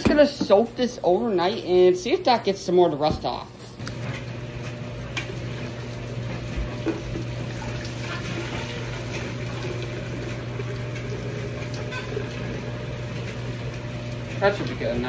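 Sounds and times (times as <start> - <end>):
liquid pouring into container: 4.8 - 15.0.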